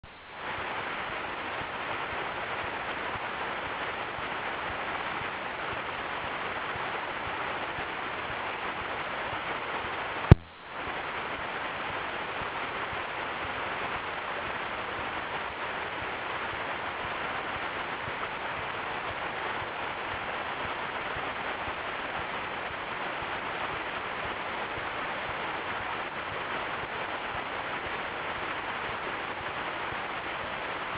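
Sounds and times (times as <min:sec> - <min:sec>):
sharp click: 0:10.3 - 0:10.5.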